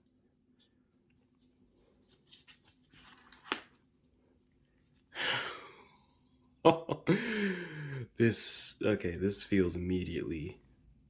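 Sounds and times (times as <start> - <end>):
packaging rustling: 1.8 - 3.8.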